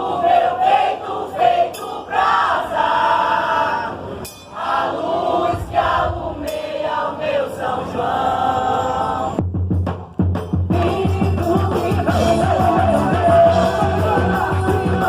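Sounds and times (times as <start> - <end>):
crowd noise: 0.0 - 9.4, 10.8 - 15.0
group singing in unison: 0.0 - 9.4, 10.7 - 15.0
song with heavy bass beat: 10.7 - 15.0.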